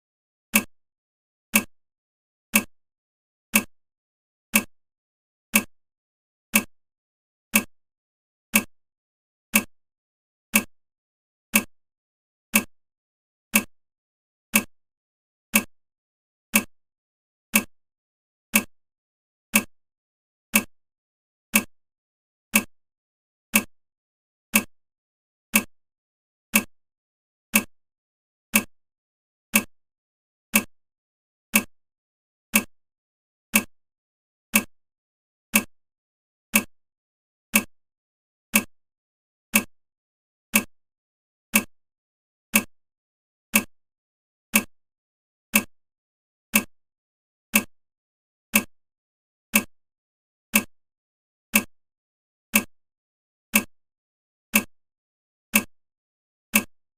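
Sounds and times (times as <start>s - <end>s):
timer ticking: 0.5s - 0.7s, 1.5s - 1.7s, 2.5s - 2.7s, 3.5s - 3.7s, 4.5s - 4.7s, 5.5s - 5.7s, 6.5s - 6.7s, 7.5s - 7.7s, 8.5s - 8.7s, 9.5s - 9.7s, 10.5s - 10.7s, 11.5s - 11.7s, 12.5s - 12.7s, 13.5s - 13.7s, 14.5s - 14.7s, 15.5s - 15.7s, 16.5s - 16.7s, 17.5s - 17.7s, 18.5s - 18.7s, 19.5s - 19.7s, 20.5s - 20.7s, 21.5s - 21.7s, 22.5s - 22.7s, 23.5s - 23.7s, 24.5s - 24.7s, 25.5s - 25.7s, 26.5s - 26.7s, 27.5s - 27.7s, 28.5s - 28.7s, 29.5s - 29.7s, 30.5s - 30.7s, 31.5s - 31.7s, 32.5s - 32.7s, 33.5s - 33.7s, 34.5s - 34.7s, 35.5s - 35.7s, 36.5s - 36.7s, 37.5s - 37.7s, 38.5s - 38.7s, 39.5s - 39.7s, 40.5s - 40.7s, 41.5s - 41.7s, 42.5s - 42.7s, 43.5s - 43.7s, 44.5s - 44.7s, 45.5s - 45.7s, 46.5s - 46.7s, 47.5s - 47.7s, 48.5s - 48.7s, 52.5s - 52.7s, 53.5s - 53.7s, 54.5s - 54.7s, 56.5s - 56.7s.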